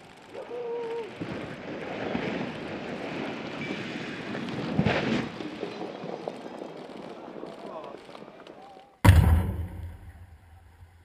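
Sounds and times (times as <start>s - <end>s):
heavy masonry impact: 9.1s - 11.0s.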